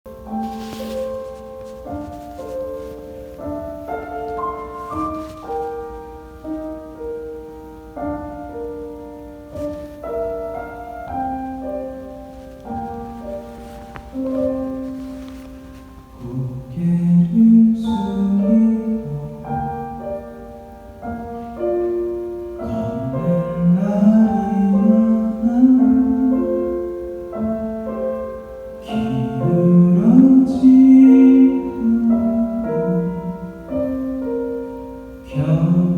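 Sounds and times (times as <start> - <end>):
solo piano ballad: 0.1 - 35.9
man singing: 16.2 - 20.2, 22.6 - 27.0, 28.8 - 33.9, 35.2 - 35.9.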